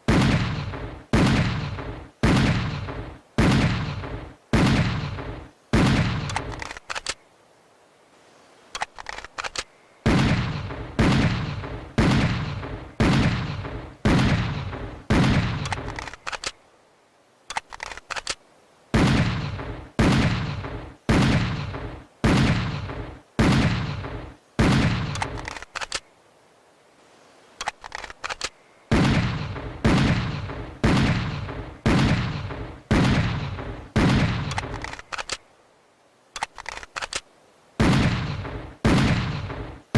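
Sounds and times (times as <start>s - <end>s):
small metallic clicks: 6.2s - 7.2s, 8.7s - 9.7s, 15.6s - 16.6s, 17.5s - 18.4s, 25.1s - 26.1s, 27.6s - 28.6s, 34.4s - 35.5s, 36.3s - 37.3s.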